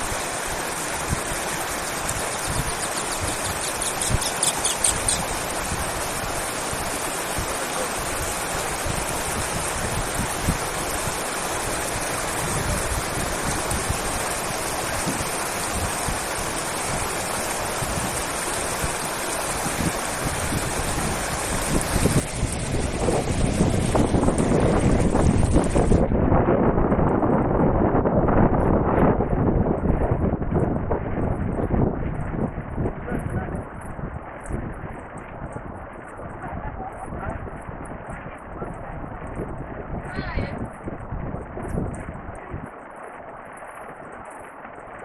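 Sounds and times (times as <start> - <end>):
rapid high-pitched clicking: 0.0 - 22.6
river water rushing: 0.0 - 26.0.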